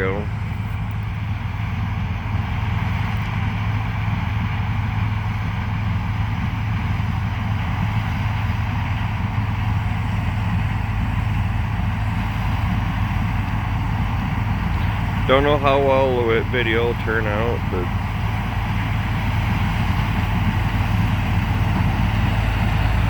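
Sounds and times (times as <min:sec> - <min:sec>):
low engine hum: 0:00.0 - 0:23.0
threshing machinery drone: 0:00.0 - 0:23.0.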